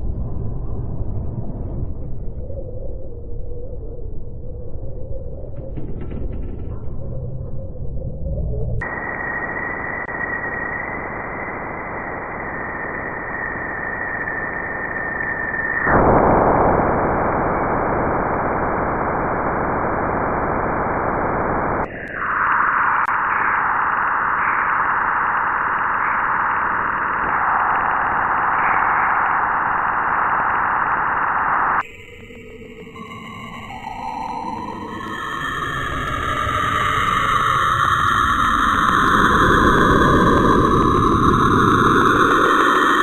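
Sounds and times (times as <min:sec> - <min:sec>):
steady high tone: 0:08.8 - 0:43.0
dense static-like hiss: 0:08.9 - 0:31.8.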